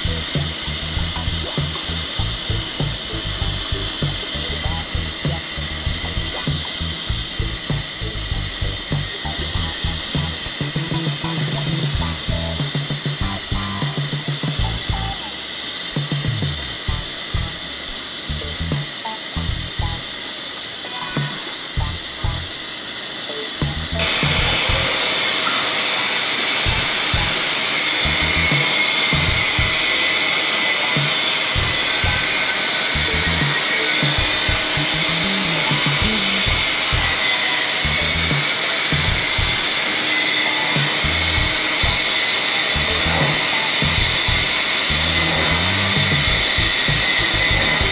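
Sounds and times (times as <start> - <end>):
machine cutting whine and hiss: 0.0 - 47.9
background music: 40.7 - 47.9.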